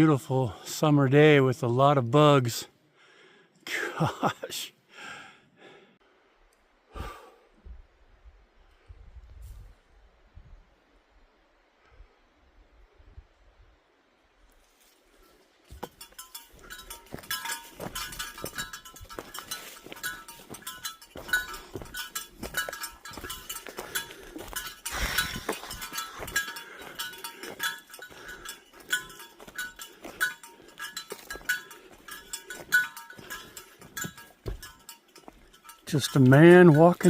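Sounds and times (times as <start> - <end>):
bell-like ringing: 15.8 - 37.0
metal items jingling and clinking: 15.8 - 37.0.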